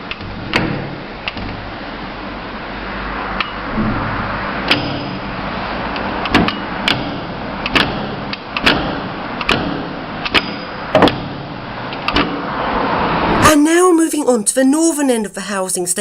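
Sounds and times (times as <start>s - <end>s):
sharp clicks and knocks: 0.0s - 1.6s, 3.4s - 5.2s, 5.9s - 12.4s
lift humming: 0.0s - 10.9s.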